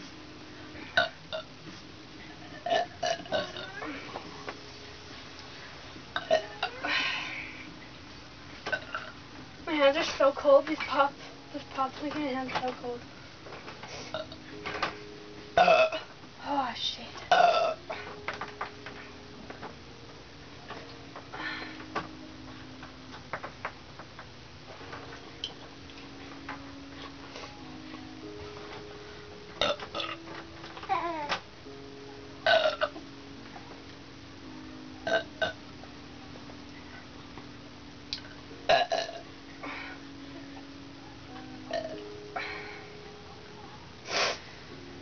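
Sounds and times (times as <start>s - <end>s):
steady low hum: 0.0s - 45.0s
person burping: 0.9s - 1.5s, 2.5s - 4.0s, 6.2s - 6.6s, 15.6s - 16.1s, 17.3s - 17.9s, 29.6s - 30.2s, 32.4s - 33.0s, 35.0s - 35.6s, 38.7s - 39.9s, 41.7s - 42.5s.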